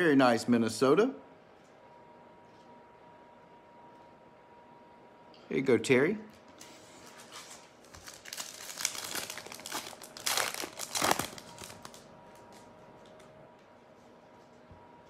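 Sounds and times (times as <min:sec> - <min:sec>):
card pack wrapper tearing and crinkling: 0:07.5 - 0:12.1.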